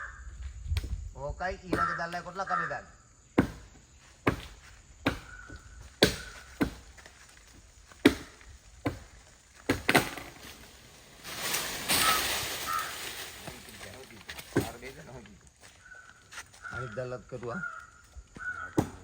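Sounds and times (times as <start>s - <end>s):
blade chopping tree branch: 6.0s - 6.9s, 8.0s - 10.7s, 11.4s - 14.9s
rustling: 9.9s - 15.5s.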